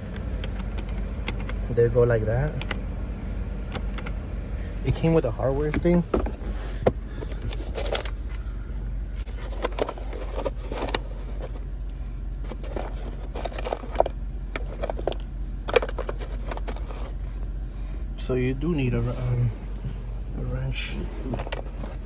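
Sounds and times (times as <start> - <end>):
steady low hum: 0.0 - 22.0
small metal hardware clinking: 9.2 - 17.2, 21.2 - 22.0.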